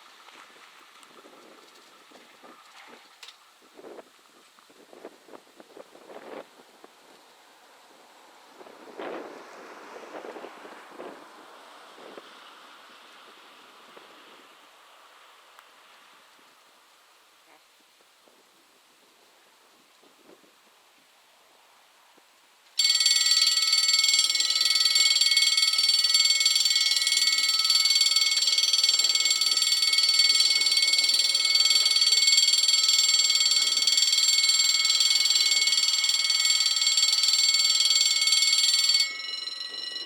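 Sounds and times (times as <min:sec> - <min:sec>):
level crossing electronic bells: 0:22.8 - 0:40.0.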